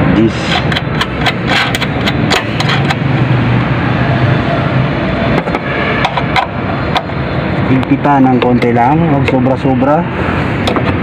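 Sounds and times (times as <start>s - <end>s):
engine running: 0.0s - 11.0s
metallic clicks and knocks: 0.4s - 3.1s, 5.4s - 7.2s.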